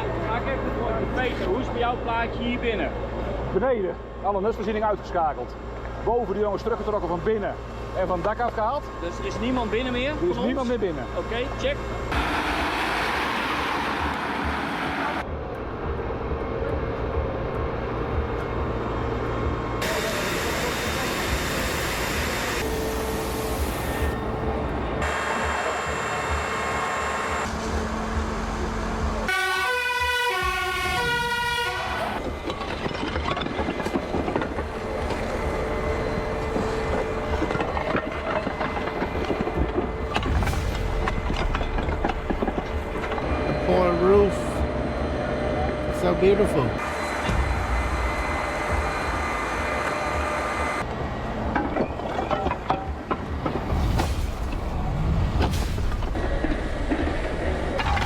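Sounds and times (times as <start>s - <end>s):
vehicle engine rumbling: 0.0s - 58.0s
loud rushing hiss: 19.8s - 27.9s
fire crackling: 32.2s - 44.5s
low rumble: 32.2s - 46.0s, 52.8s - 58.0s
steady hum: 34.0s - 51.5s.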